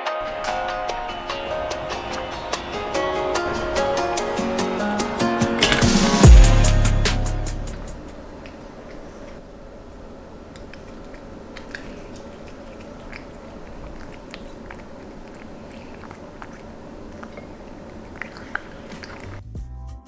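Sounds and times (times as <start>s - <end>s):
soft clicks and crunches: 0.2s - 6.2s, 8.0s - 19.4s
low hum: 0.3s - 8.5s.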